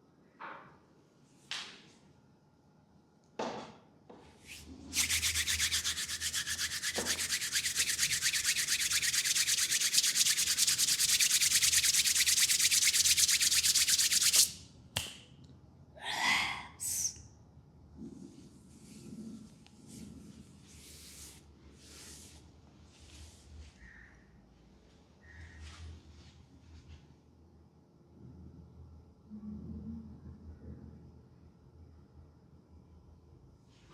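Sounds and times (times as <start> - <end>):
hands rubbing rapidly: 4.5 - 15.1.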